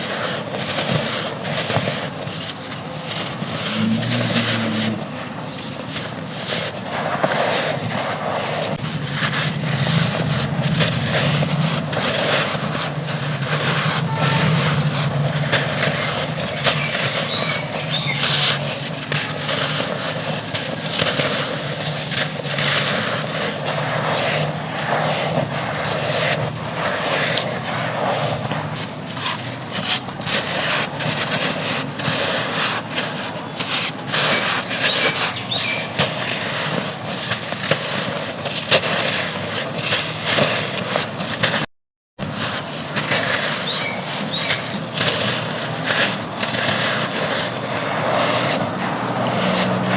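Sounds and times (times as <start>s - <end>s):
dry dirt crumbling: 8.8s - 41.6s.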